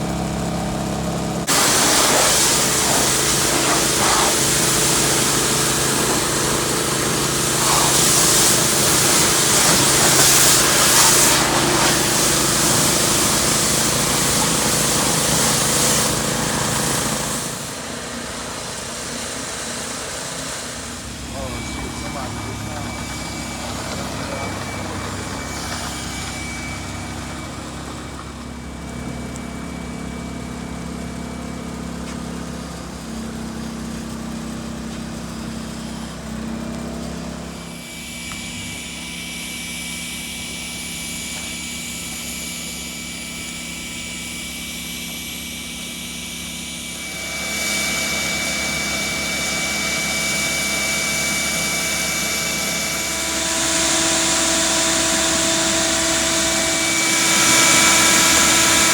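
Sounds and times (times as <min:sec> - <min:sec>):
motor running: 0:00.0 - 0:58.9
hiss: 0:01.5 - 0:27.3, 0:37.6 - 0:58.9
held tones: 0:20.8 - 0:30.6, 0:46.6 - 0:58.9.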